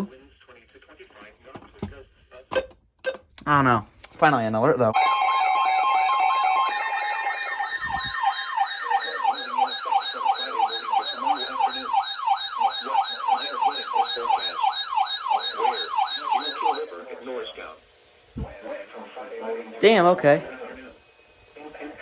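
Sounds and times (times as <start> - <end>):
two-tone attention signal: 5.0 - 16.8
warbling siren: 5.0 - 16.8.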